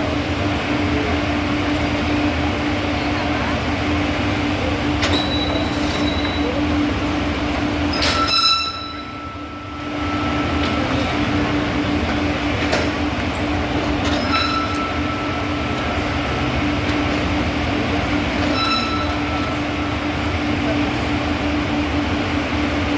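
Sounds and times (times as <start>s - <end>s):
train rumbling on rails: 0.0s - 22.9s
wheels squealing: 7.4s - 20.0s.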